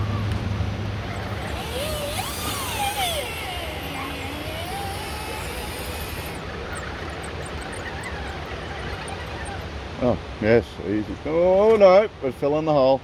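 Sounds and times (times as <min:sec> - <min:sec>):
electric motor and gear whine: 0:00.0 - 0:10.0.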